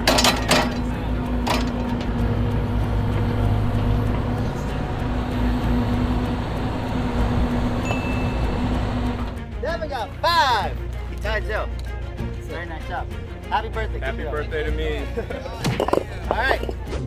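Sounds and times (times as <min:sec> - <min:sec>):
excavator engine running: 0:00.0 - 0:09.6, 0:15.2 - 0:16.9.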